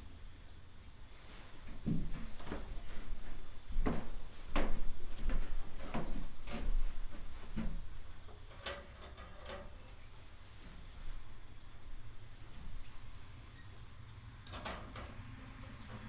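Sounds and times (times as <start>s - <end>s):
knocks and clunks: 1.7s - 7.9s.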